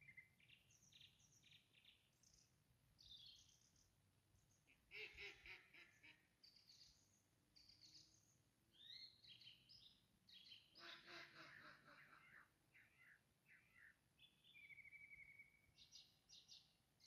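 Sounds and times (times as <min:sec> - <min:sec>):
low rough bird calls: 0:10.3 - 0:16.1
birds chirping and whistling: 0:14.4 - 0:16.5.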